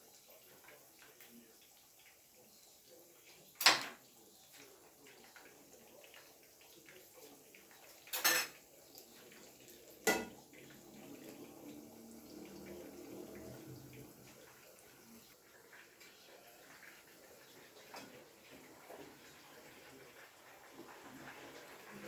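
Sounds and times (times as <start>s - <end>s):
utensils clanking against dishes: 3.6s - 4.0s, 8.1s - 8.6s, 10.0s - 10.8s.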